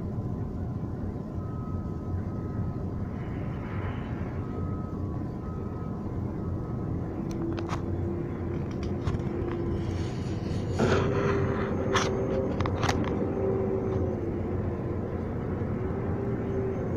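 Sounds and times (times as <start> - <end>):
demolition machinery rumbling: 1.4 - 16.9
loud crash: 10.6 - 11.8.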